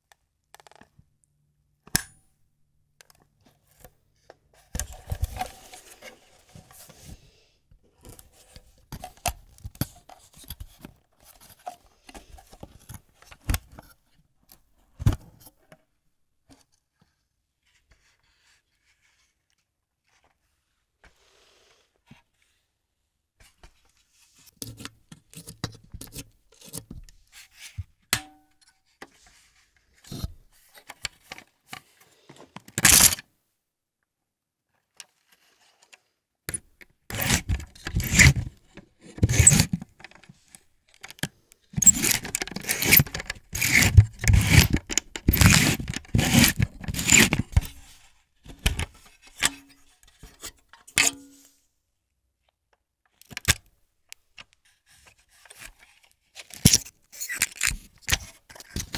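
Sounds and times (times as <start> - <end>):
scraping and rubbing: 37.1 - 39.8, 41.8 - 48.1.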